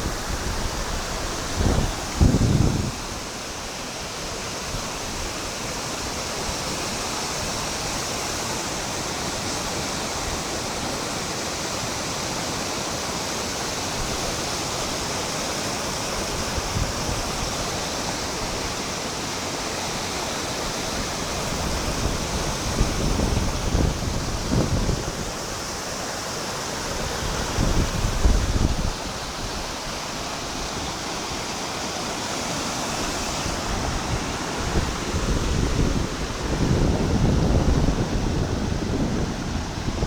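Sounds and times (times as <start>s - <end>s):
wind buffeting microphone: 0.0s - 3.3s, 21.4s - 25.6s, 27.0s - 30.9s, 33.0s - 40.0s
river water rushing: 0.0s - 40.0s.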